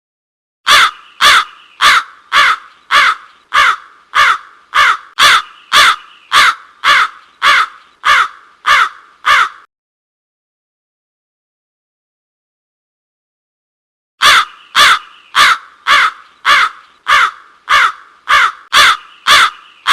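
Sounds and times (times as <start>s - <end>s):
crow cawing: 0.7s - 9.7s, 14.2s - 19.9s.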